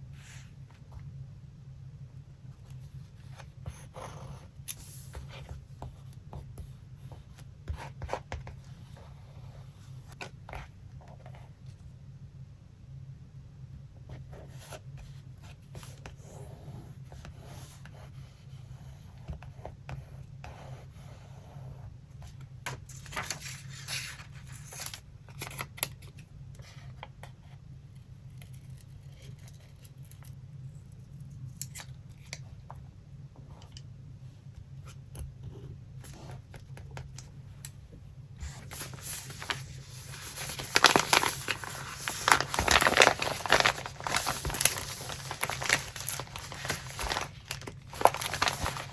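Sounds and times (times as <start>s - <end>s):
paper crinkling and rustling: 22.7s - 26.3s, 38.4s - 48.9s.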